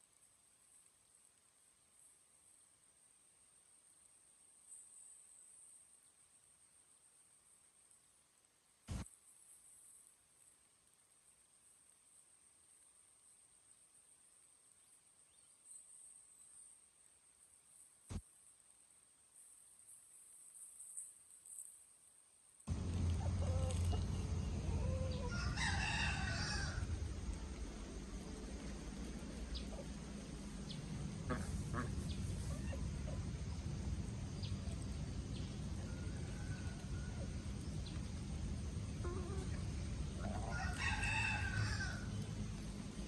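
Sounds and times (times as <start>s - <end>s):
soft clucks and chirps: 22.7s - 43.0s
steady low hum: 22.7s - 43.0s
rooster crowing: 24.6s - 27.0s, 40.2s - 42.2s.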